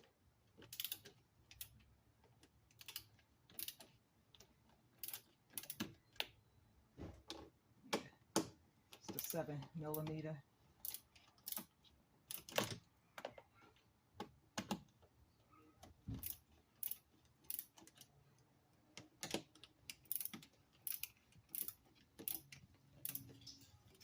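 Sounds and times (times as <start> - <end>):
socket ratchet clicking: 0.6 - 1.8, 2.7 - 5.9, 16.2 - 18.1, 19.2 - 23.3.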